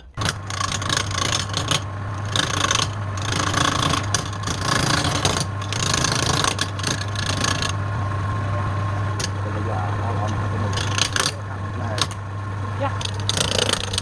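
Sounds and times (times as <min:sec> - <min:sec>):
tool rasping against spinning wood: 0:00.0 - 0:14.0
wood lathe motor humming: 0:00.0 - 0:14.0.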